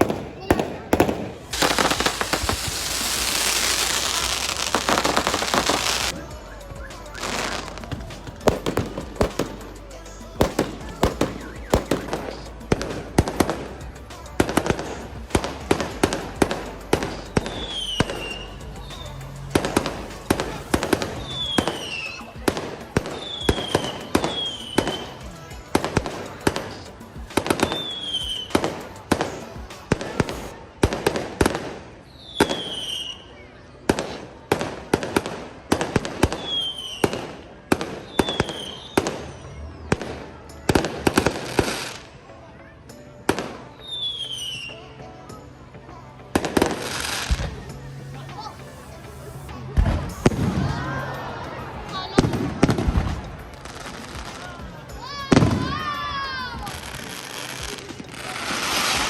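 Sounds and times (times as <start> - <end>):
fireworks banging: 0.0 - 33.0, 46.4 - 59.0
falling firework whistles: 1.5 - 7.8, 21.1 - 22.3, 32.1 - 33.3, 36.3 - 37.3, 37.9 - 39.6.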